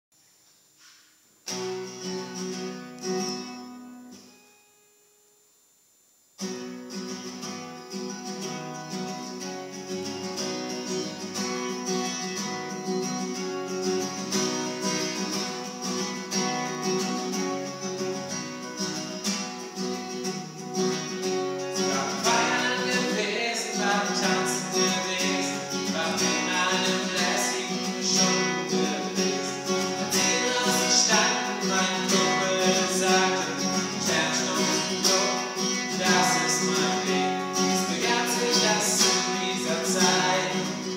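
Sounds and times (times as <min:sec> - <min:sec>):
acoustic guitar playing: 0:00.8 - 0:05.4, 0:06.4 - 0:40.9
person singing: 0:21.7 - 0:40.9.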